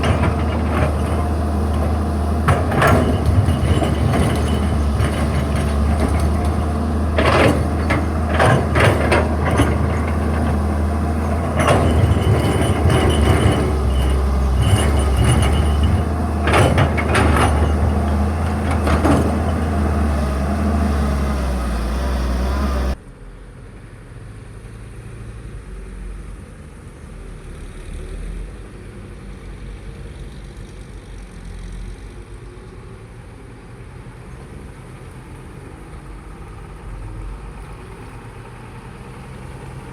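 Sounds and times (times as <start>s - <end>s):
metal clanks: 0.0s - 20.4s
excavator diesel engine running: 0.0s - 23.0s, 34.8s - 39.9s.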